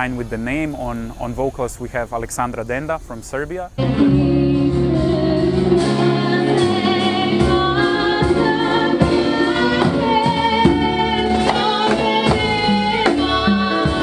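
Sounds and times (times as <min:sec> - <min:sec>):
bass notes: 0:00.0 - 0:14.0
woman singing: 0:03.8 - 0:14.0.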